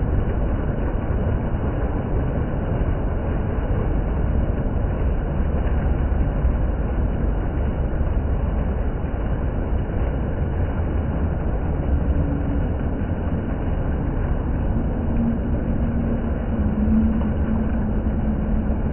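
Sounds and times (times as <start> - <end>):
water fountain running: 0.0 - 18.9.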